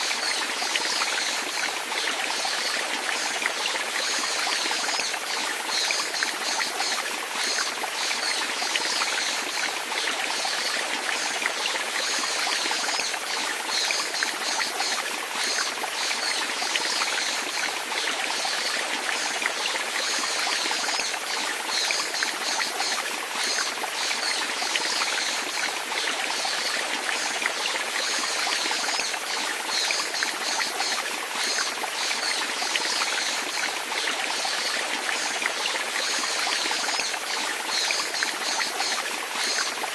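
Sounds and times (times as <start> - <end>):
stream trickling and splashing: 0.0 - 39.9.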